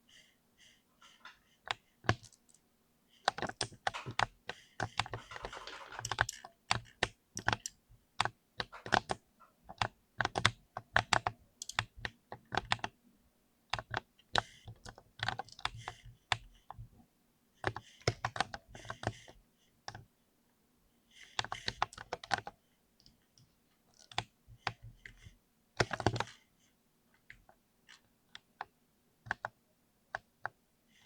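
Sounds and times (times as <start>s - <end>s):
mechanical keyboard typing: 3.3s - 9.2s, 9.8s - 12.9s.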